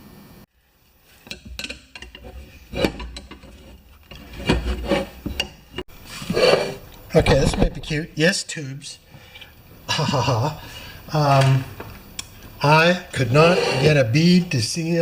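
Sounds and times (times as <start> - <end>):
rubbing and scraping: 1.4 - 7.7, 13.2 - 14.5.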